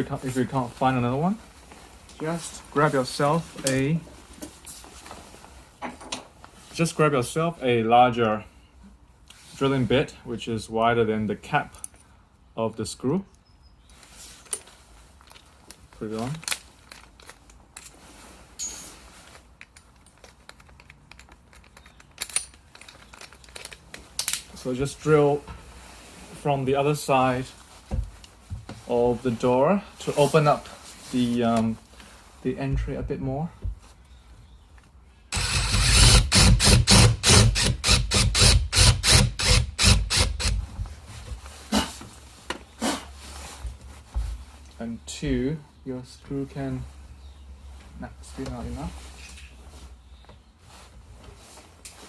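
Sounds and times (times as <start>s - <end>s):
power drill boring into wood: 35.3s - 40.6s.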